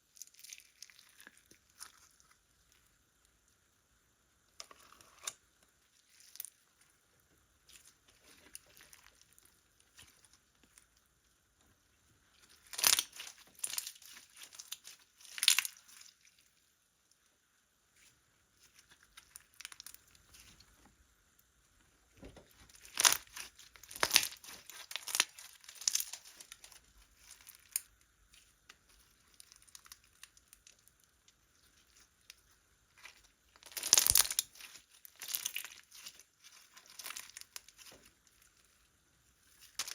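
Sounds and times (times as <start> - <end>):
slime crackling and popping: 0.0 - 3.0, 12.3 - 16.5, 18.6 - 20.8, 22.2 - 39.9.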